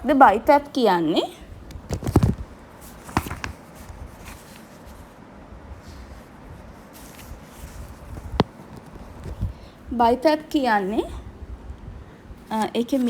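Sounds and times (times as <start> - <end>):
light rustling: 1.7 - 5.1.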